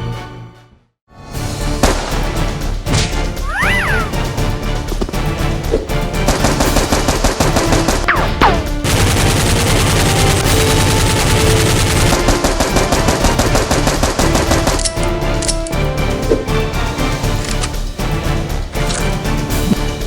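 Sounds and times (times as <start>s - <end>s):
background music: 0.0s - 20.0s
automatic gunfire: 6.3s - 15.0s.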